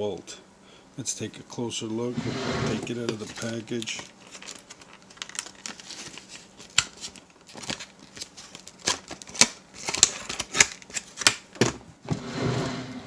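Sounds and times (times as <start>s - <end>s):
packaging clicking and crackling: 3.0s - 11.6s.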